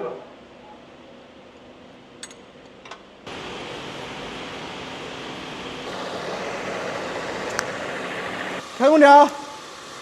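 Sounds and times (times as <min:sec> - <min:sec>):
faint hum: 0:03.3 - 0:10.0
car engine idling: 0:05.0 - 0:10.0.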